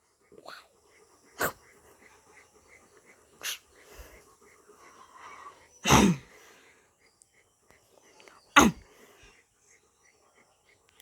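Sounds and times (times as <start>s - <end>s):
dog snorting: 0.3s - 4.3s.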